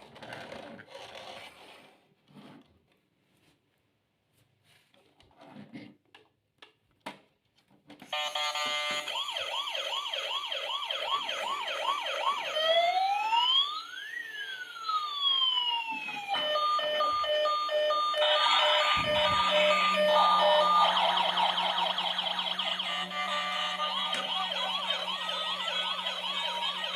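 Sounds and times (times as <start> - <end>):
toy electronic siren: 8.1 - 26.9.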